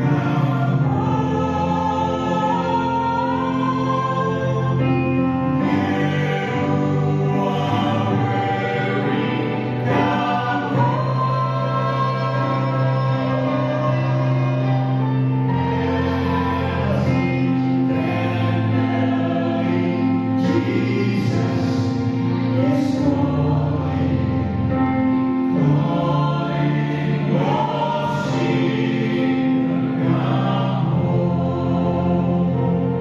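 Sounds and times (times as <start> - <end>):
choir singing in harmony: 0.0 - 33.0.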